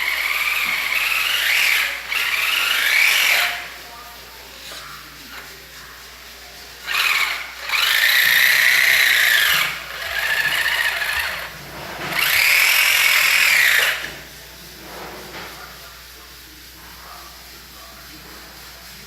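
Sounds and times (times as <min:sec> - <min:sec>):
small electric motor whining: 0:00.0 - 0:14.2.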